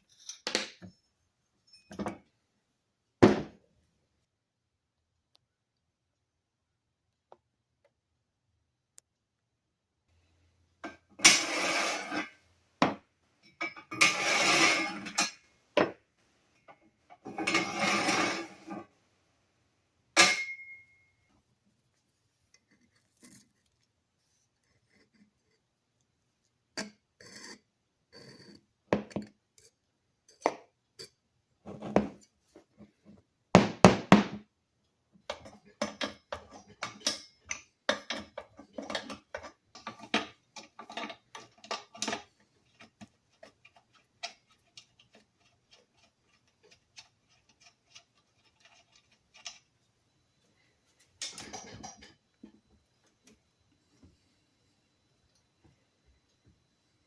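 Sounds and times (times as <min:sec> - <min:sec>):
hand tools scraping metal: 0:10.8 - 0:12.4, 0:13.5 - 0:15.4, 0:17.2 - 0:18.9
metallic clink: 0:20.2 - 0:21.2.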